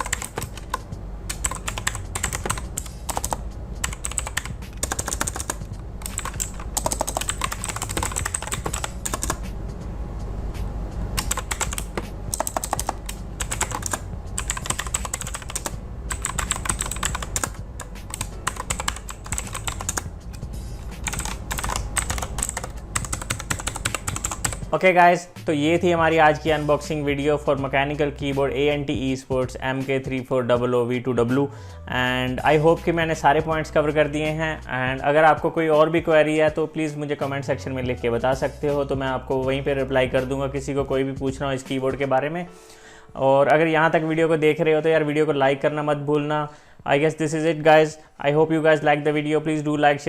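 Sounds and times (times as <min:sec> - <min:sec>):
mechanical keyboard typing: 0:00.0 - 0:09.4, 0:11.2 - 0:20.1, 0:21.0 - 0:24.6.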